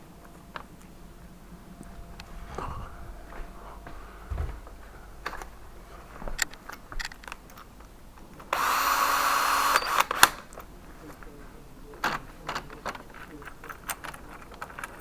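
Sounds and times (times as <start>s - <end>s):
tools clicking and knocking: 6.3s - 8.7s, 12.0s - 15.0s
cordless power drill running: 8.5s - 10.5s.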